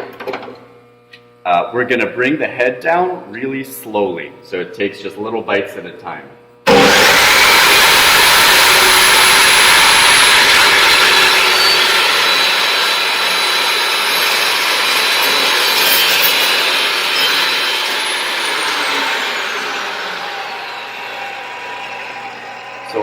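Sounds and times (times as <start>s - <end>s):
saw cutting metal with whine: 6.7s - 23.0s.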